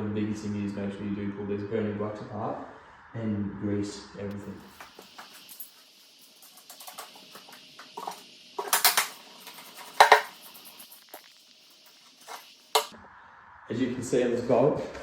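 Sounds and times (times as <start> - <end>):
metallic clatters: 4.7 - 12.9
metal tools clicking and clinking: 4.8 - 11.4.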